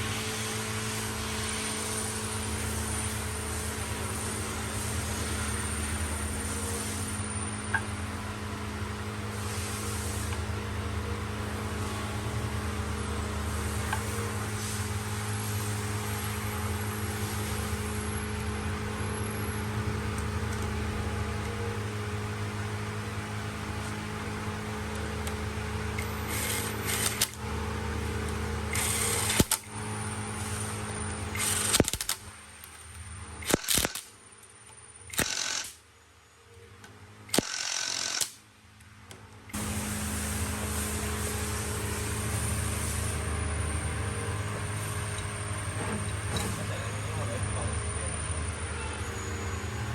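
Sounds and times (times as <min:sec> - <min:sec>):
workshop machinery hum: 0:00.0 - 0:49.9
short bursts of hiss: 0:09.4 - 0:10.3, 0:39.6 - 0:43.3
sharp metal clicks: 0:31.3 - 0:35.8, 0:37.3 - 0:38.4.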